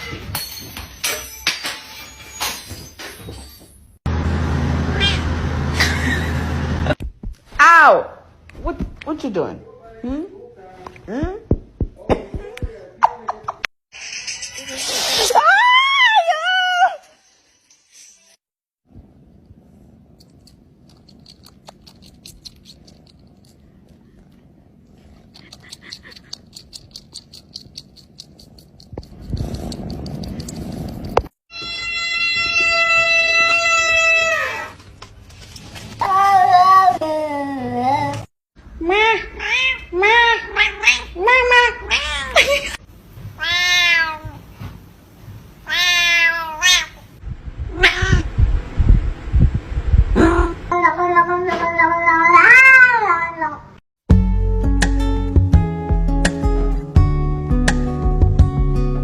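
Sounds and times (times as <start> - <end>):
cat meowing: 4.9 - 5.3, 47.7 - 48.3, 50.8 - 53.6
cat purring: 23.8 - 31.0.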